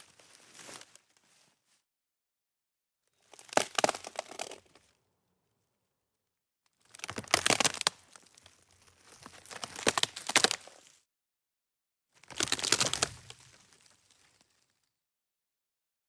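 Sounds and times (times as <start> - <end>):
crinkling handling noise: 3.2 - 4.9, 6.8 - 11.0, 12.2 - 15.0.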